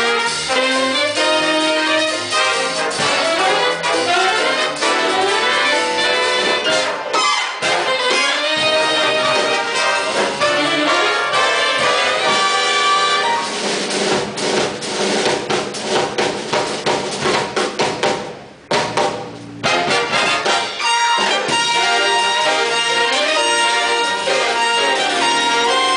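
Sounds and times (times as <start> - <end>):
trumpets and trombones playing: 0.0 - 14.0, 19.6 - 25.9
big band jazz: 0.0 - 25.9
drum kit: 0.0 - 25.9.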